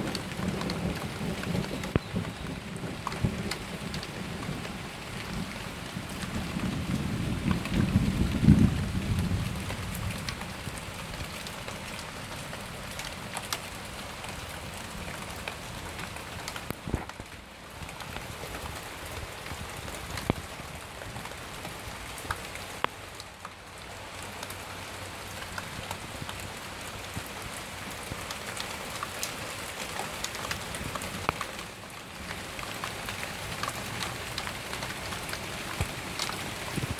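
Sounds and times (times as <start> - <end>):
low thunder rumble: 0.0 - 11.4
rain falling: 0.0 - 36.9
raindrops ticking close by: 0.0 - 36.9.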